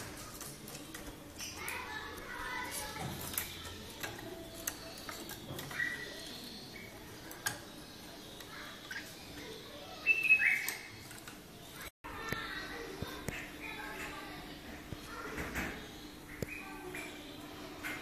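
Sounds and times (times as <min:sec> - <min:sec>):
bird chirps: 0:02.5 - 0:11.9, 0:14.9 - 0:18.0.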